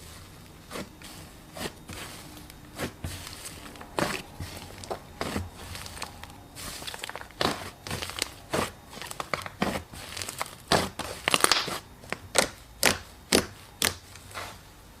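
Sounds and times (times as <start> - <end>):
slime squished popping: 6.9 - 14.0.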